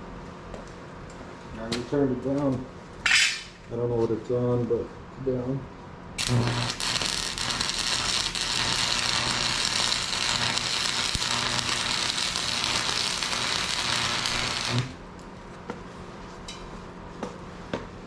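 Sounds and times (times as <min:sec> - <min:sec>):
welding arc crackling and buzzing: 0:06.2 - 0:15.0.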